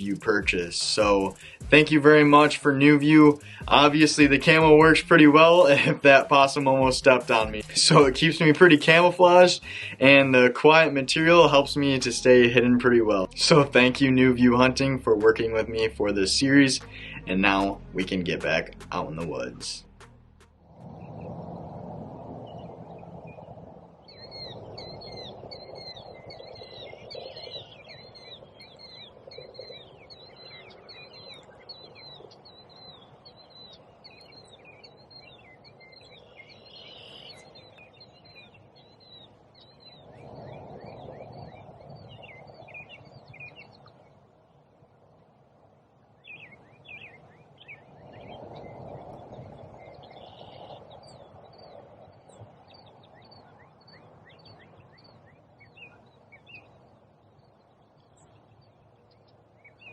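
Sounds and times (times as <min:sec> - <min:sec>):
songbirds chirping and singing: 0:00.0 - 0:20.0, 0:22.4 - 0:44.2, 0:46.1 - 0:59.9
low rushing noise: 0:00.0 - 0:27.1.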